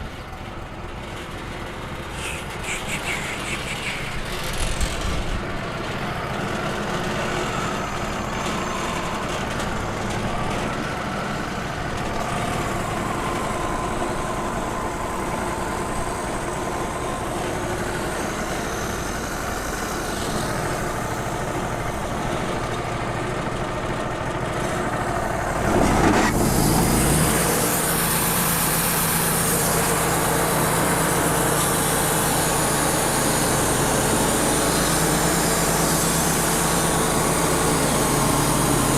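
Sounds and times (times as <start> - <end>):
sawmill engine running: 0.0 - 38.9
saw blade hissing: 2.1 - 4.9.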